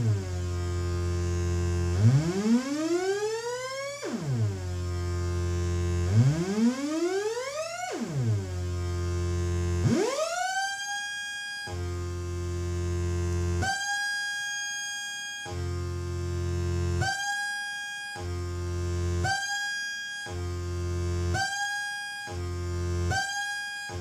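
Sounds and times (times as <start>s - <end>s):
synthesizer buzzy drone: 0.0s - 14.4s, 15.4s - 17.5s, 18.1s - 19.7s, 20.3s - 24.0s.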